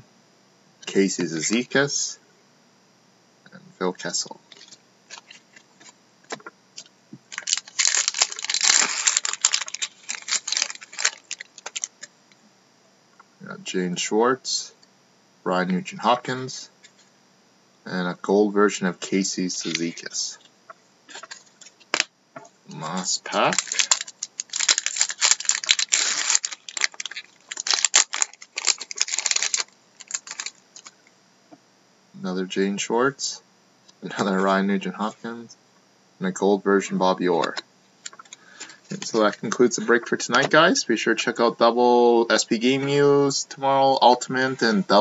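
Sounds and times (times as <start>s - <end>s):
wrapper crinkling and tearing: 6.8s - 12.1s, 21.1s - 22.1s, 23.3s - 30.9s.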